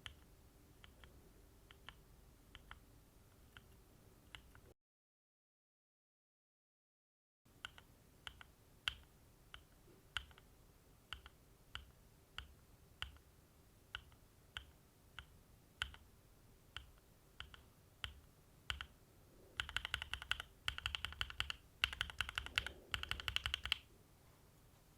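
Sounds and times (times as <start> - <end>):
mechanical keyboard typing: 14.0 - 16.0, 16.8 - 19.0, 19.6 - 23.9.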